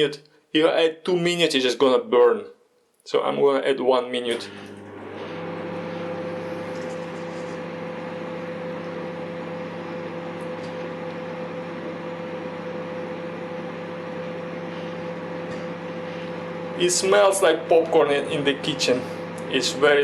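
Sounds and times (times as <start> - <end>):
microwave oven humming: 4.3 - 20.0.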